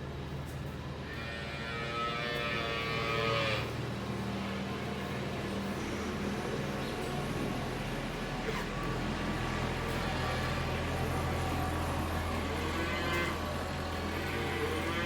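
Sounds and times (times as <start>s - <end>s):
calf mooing: 1.1s - 3.7s, 12.5s - 13.5s, 14.2s - 15.0s.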